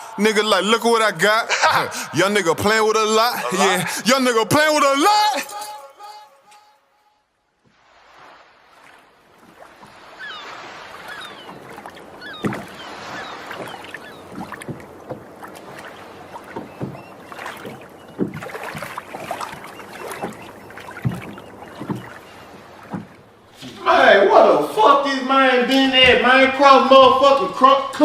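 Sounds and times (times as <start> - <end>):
water noise: 0.0 - 6.7, 7.6 - 28.0
short squeaky chirps: 10.2 - 14.3
knocks and thumps: 12.4 - 12.8, 13.6 - 15.8, 16.5 - 23.8.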